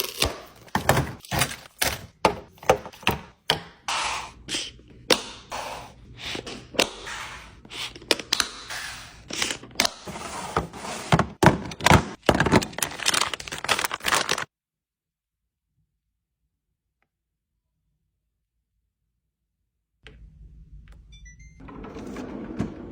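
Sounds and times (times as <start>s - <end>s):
packages knocking into fridge drawer: 0.1s - 3.7s, 9.6s - 14.4s
wrappers rustling: 12.2s - 14.5s.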